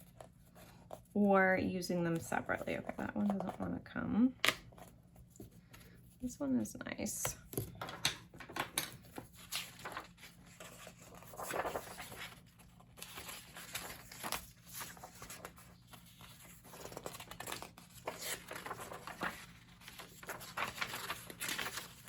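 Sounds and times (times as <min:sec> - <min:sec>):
paper tearing and rustling: 0:09.4 - 0:22.0.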